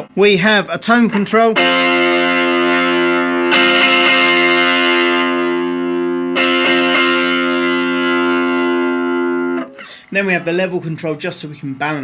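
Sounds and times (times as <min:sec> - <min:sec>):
overdriven electric guitar chord: 0:01.6 - 0:09.8.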